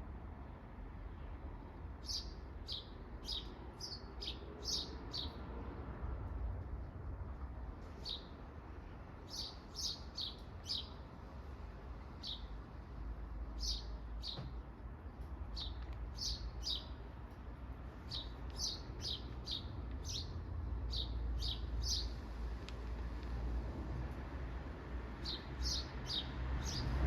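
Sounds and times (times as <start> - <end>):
small bird chirping: 15.5 - 17.0, 18.0 - 22.2.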